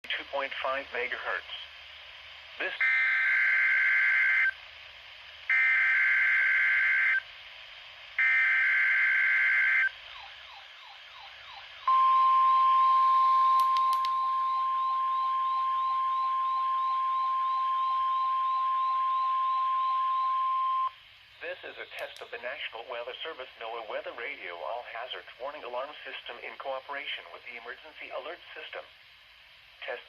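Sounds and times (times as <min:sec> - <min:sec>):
steady warning alarm tone: 0:02.8 - 0:04.6, 0:05.5 - 0:07.2, 0:08.2 - 0:20.9
sharp clicks: 0:13.6 - 0:14.2, 0:21.9 - 0:22.4.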